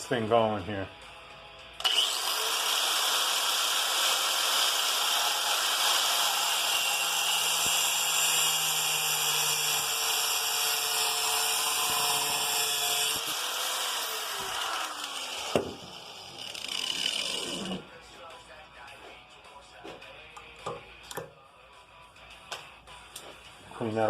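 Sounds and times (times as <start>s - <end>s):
angle grinder grinding metal: 1.8s - 17.9s.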